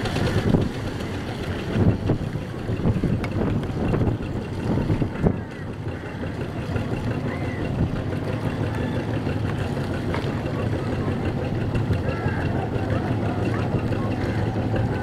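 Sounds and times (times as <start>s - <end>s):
boat engine humming: 0.0s - 15.0s.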